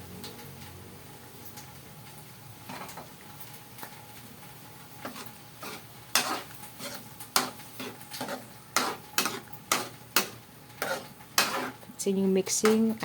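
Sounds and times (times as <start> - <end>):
utensil scraping sauce pan: 5.0 - 11.9.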